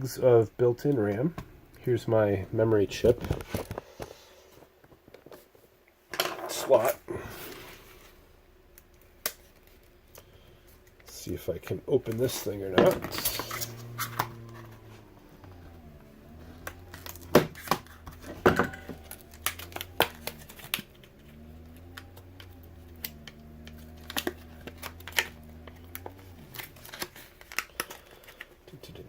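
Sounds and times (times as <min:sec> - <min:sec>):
low wavering hum: 0:11.6 - 0:28.5.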